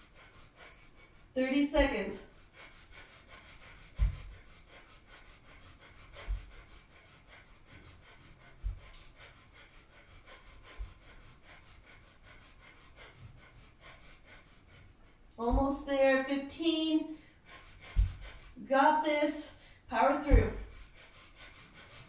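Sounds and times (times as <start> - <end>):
dull low thump: 1.8 - 2.0, 4.0 - 4.4, 15.4 - 15.9, 17.9 - 18.4, 20.2 - 20.8.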